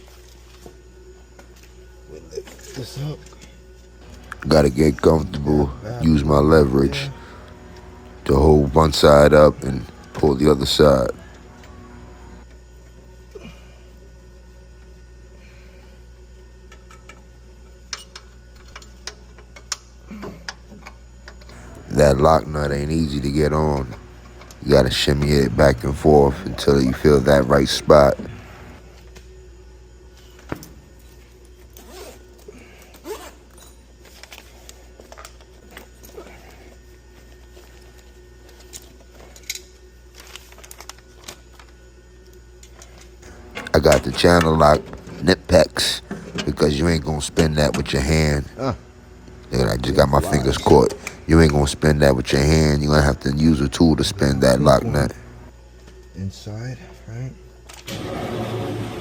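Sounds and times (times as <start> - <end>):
low hum: 4.0 - 13.9, 21.2 - 31.2, 40.2 - 55.8.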